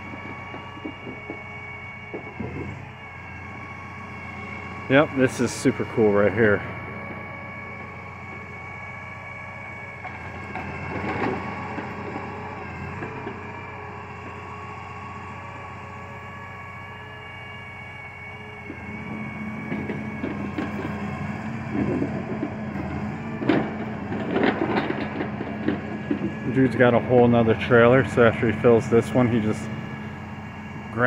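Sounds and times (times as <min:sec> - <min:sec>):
diesel engine running: 0:00.0 - 0:31.0
hydraulic whine: 0:00.0 - 0:31.0.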